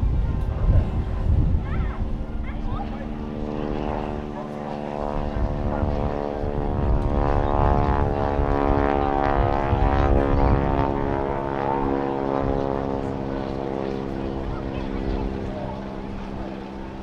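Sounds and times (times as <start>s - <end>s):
propeller plane engine droning: 0.0s - 17.0s.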